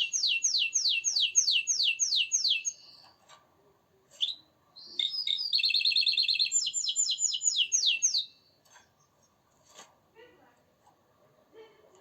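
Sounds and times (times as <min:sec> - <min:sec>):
canary singing: 0:00.0 - 0:03.0, 0:04.2 - 0:08.4.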